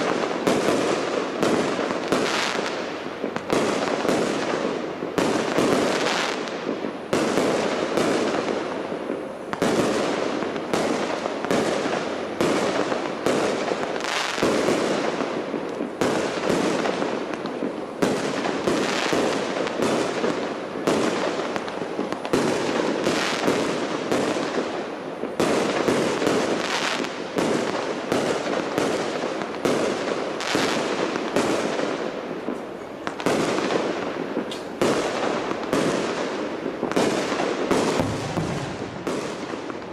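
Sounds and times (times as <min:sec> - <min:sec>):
fireworks shells bursting: 0:32.4 - 0:35.4.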